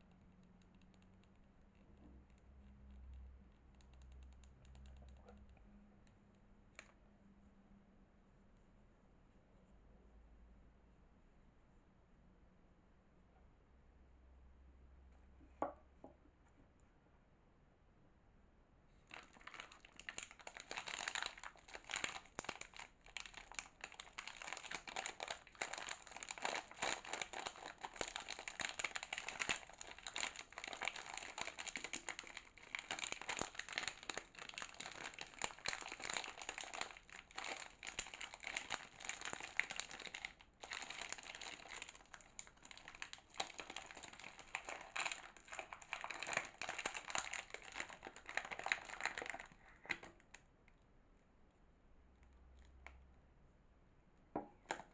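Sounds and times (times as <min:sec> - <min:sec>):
soap packaging crinkling: 0:19.0 - 0:50.5.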